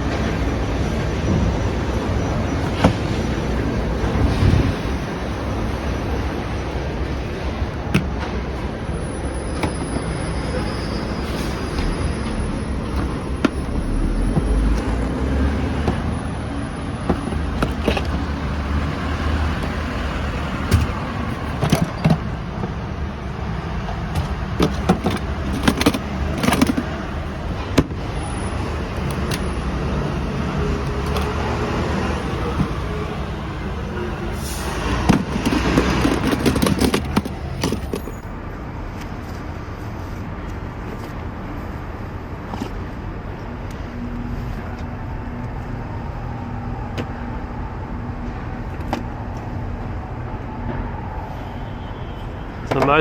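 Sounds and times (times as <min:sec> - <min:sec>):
city traffic rumble: 0:00.0 - 0:53.0.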